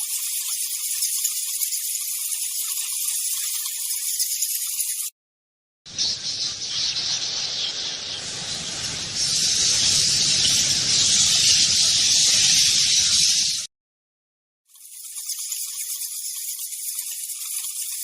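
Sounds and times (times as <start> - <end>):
high-pitched hissing rush: 6.2 - 13.7.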